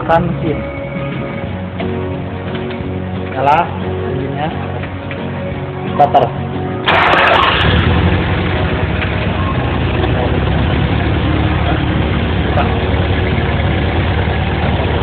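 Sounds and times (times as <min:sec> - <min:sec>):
engine idling: 0:06.8 - 0:15.0.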